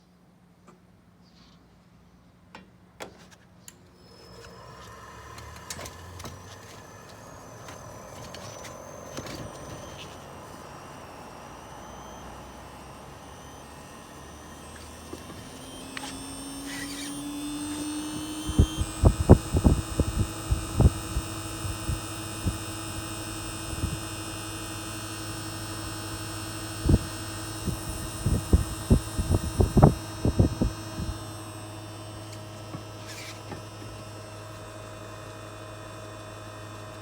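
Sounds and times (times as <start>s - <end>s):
air conditioner whirring hum: 0.0s - 37.0s
air conditioner clicks: 2.5s - 24.1s
low tone rising in pitch: 4.0s - 24.1s.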